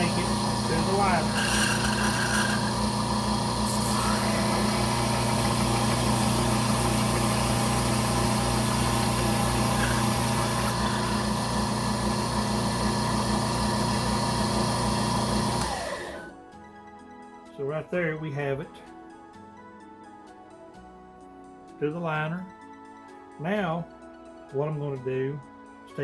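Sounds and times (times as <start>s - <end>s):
belt sander grinding: 0.0s - 16.3s.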